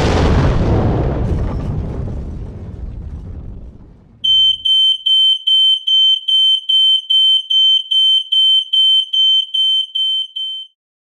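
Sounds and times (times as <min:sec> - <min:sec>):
electronic alarm beeping rapidly: 0:04.2 - 0:10.7.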